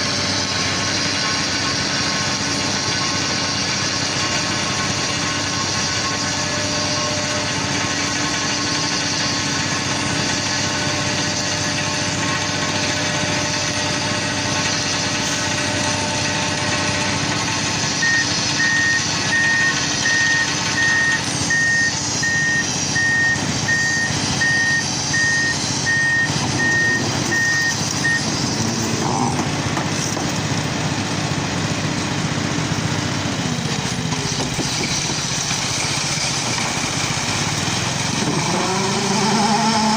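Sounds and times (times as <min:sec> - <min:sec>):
excavator diesel engine running: 0:00.0 - 0:39.9
warning alarm beeps: 0:18.0 - 0:28.3.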